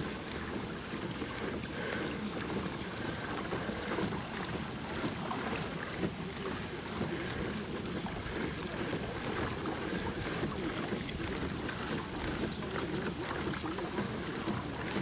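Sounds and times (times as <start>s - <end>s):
boat motor running: 0.0s - 15.0s.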